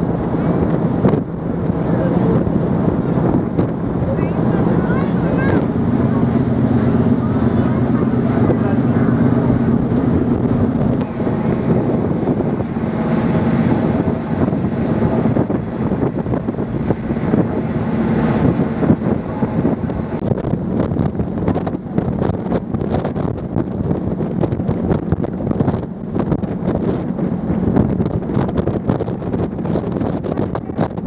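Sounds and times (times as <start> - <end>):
ship engines humming: 0.0 - 28.5
sea rushing: 0.0 - 31.0
wind buffeting microphone: 0.0 - 31.0.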